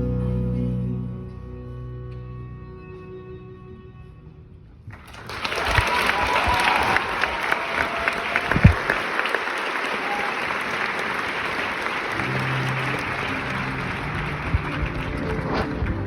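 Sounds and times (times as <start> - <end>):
audience applauding: 4.9 - 16.0
band playing low held notes: 11.7 - 16.0.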